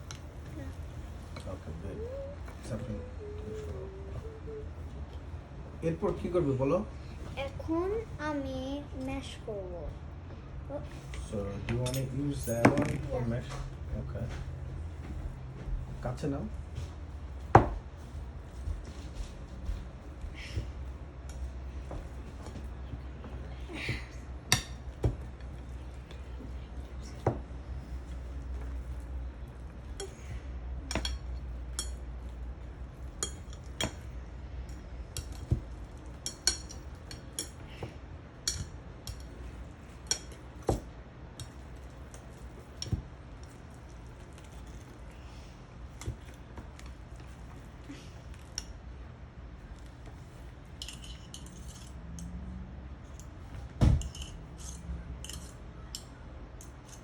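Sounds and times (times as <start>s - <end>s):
utensil clinking against bowl: 33.0s - 34.1s, 38.4s - 39.3s, 50.8s - 52.4s, 54.0s - 57.0s.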